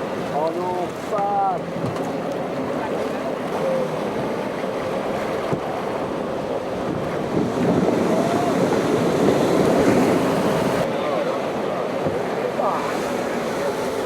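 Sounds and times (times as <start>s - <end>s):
ocean surf rushing: 0.0s - 14.0s
wind buffeting microphone: 1.7s - 10.9s.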